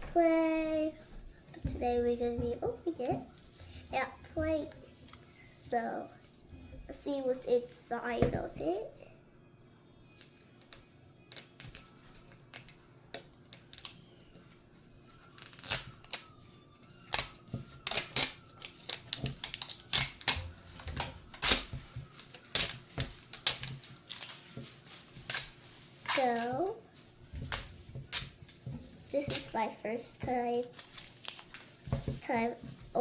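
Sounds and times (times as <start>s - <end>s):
packaging clicks and crackles: 10.6s - 14.0s, 15.4s - 16.4s, 17.0s - 29.6s, 30.6s - 32.8s.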